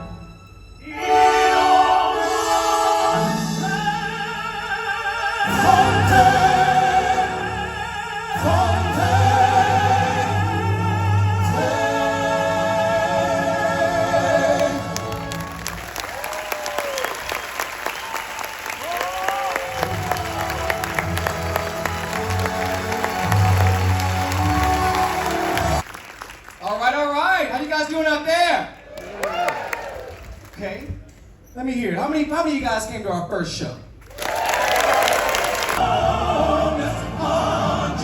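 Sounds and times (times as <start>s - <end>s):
operatic singing: 0.0s - 16.0s, 19.7s - 25.8s, 35.6s - 38.0s
musical accompaniment: 0.0s - 16.3s, 19.6s - 25.9s, 35.8s - 38.0s
audience applause: 14.6s - 26.8s, 28.9s - 30.6s, 34.1s - 36.0s.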